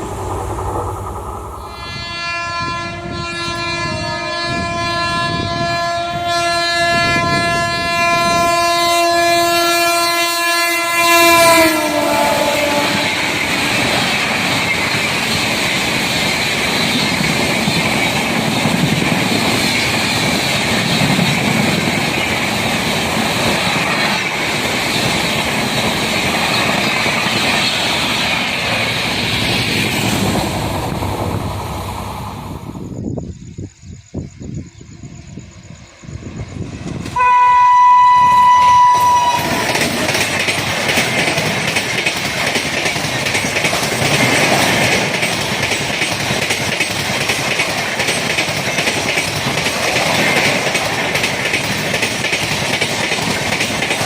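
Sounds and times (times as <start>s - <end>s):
train horn long note: 0.0s - 13.9s, 37.1s - 40.1s
train coaches rushing and clattering: 0.0s - 33.3s, 35.0s - 54.0s.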